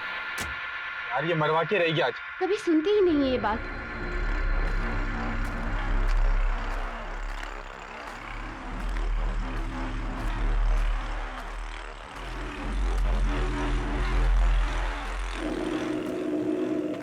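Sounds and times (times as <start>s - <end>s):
low droning rumble: 0.0s - 17.0s.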